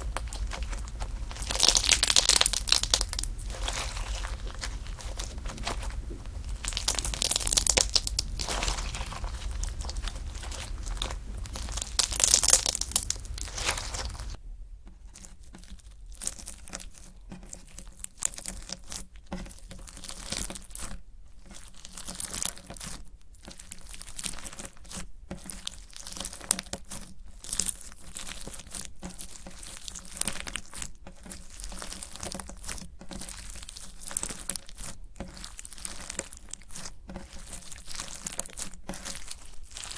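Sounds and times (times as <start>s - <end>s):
slime squeezed by hand: 0.0s - 14.4s.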